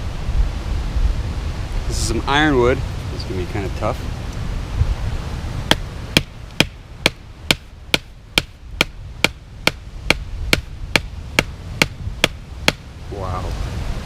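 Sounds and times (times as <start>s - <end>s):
knife chopping into hard wood: 5.7s - 12.8s.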